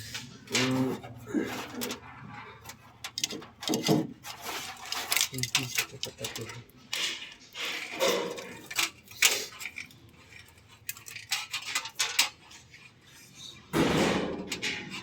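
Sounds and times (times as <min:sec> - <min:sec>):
small metal objects clinking: 0:02.7 - 0:12.8.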